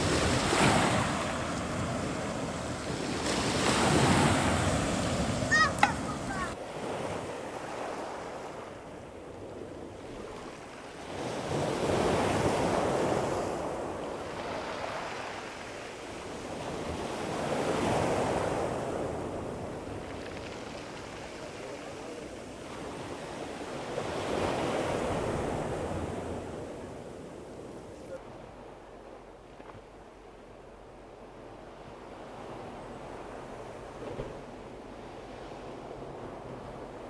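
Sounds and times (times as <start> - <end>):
wind buffeting microphone: 0.0 - 6.6
waves breaking on shore: 0.0 - 28.6.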